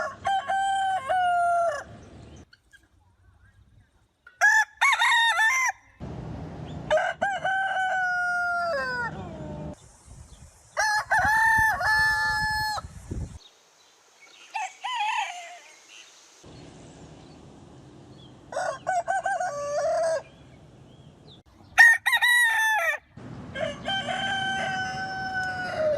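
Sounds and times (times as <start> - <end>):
roosters crowing: 0.0 - 2.3, 4.4 - 9.8, 10.8 - 12.9, 14.4 - 15.8, 18.4 - 20.6, 21.8 - 25.9.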